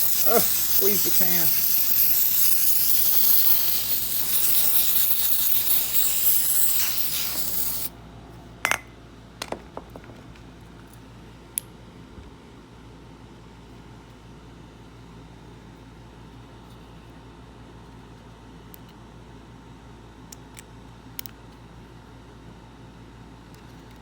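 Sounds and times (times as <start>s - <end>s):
aerosol can spraying hiss: 0.0s - 7.9s.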